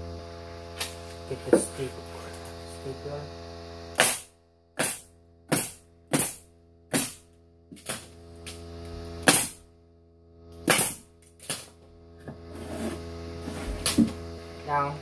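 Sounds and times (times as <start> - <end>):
steady hum: 0.0 - 15.0
pneumatic stapler firing: 4.0 - 7.2, 9.2 - 9.6, 10.6 - 11.7.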